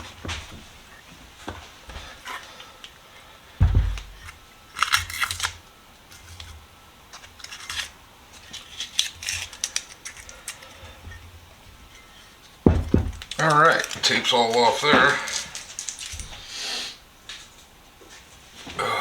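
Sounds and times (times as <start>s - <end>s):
dull knock: 3.6s - 4.2s, 12.7s - 13.4s.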